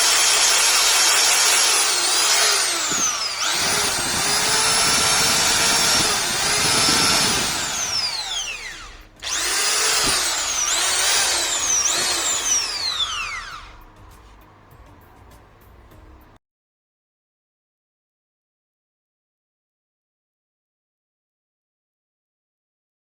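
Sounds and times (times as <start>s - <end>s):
electric drill motor whining: 0.0s - 13.9s.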